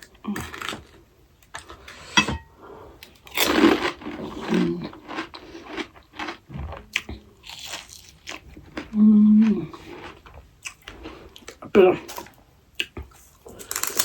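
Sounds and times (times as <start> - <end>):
crunchy food being chewed: 3.0 - 14.0.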